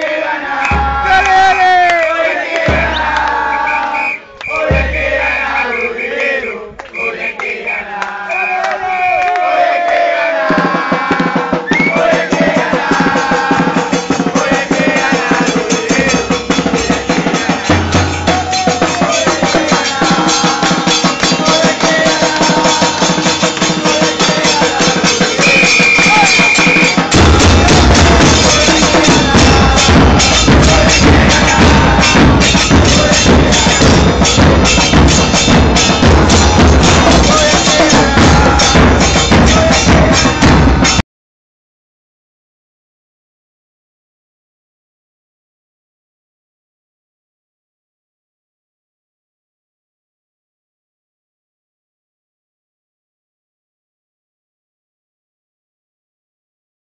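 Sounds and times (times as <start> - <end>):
drums playing a fast rhythm: 0.0 - 3.8, 4.5 - 6.0, 10.2 - 41.0
voices singing along: 0.0 - 41.0
high steady tone: 24.4 - 40.2.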